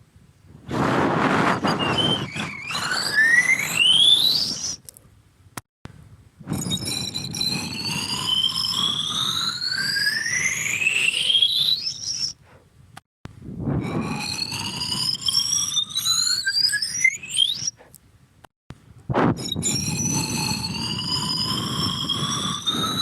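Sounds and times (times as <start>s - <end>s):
rushing noise: 0.6s - 4.0s, 13.4s - 16.0s, 19.1s - 23.0s
rising tone sound effect: 6.5s - 11.9s, 13.5s - 17.5s, 19.1s - 23.0s.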